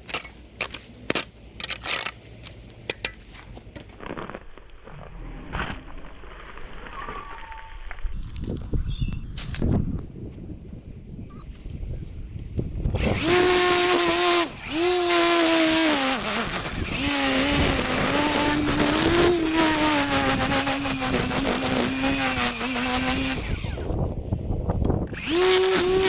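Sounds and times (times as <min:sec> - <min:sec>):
string trimmer running: 0:12.9 - 0:24.2, 0:25.1 - 0:26.0.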